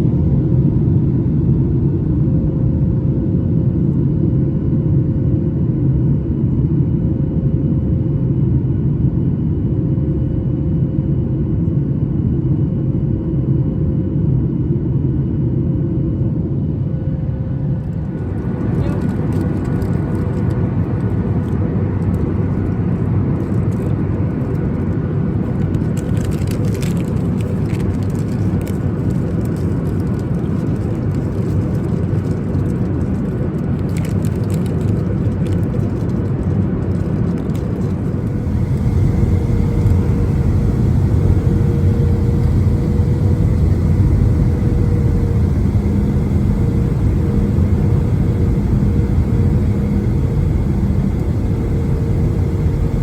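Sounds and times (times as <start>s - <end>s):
jet engine cabin rumble: 0.0s - 53.0s
faint steady hum: 14.2s - 53.0s.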